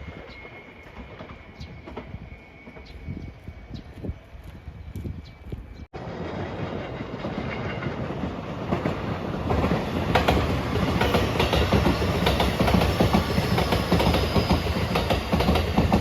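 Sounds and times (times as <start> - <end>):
train passing: 0.0 - 16.0
wheels clacking over rail joints: 6.0 - 16.0.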